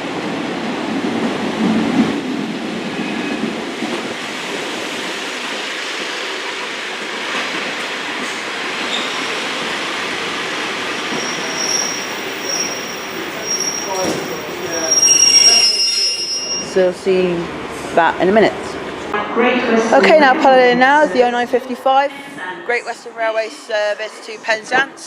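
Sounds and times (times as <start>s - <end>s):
train engine and wheels rumbling: 0.0s - 20.0s
high-pitched wheel squeals: 11.1s - 16.8s.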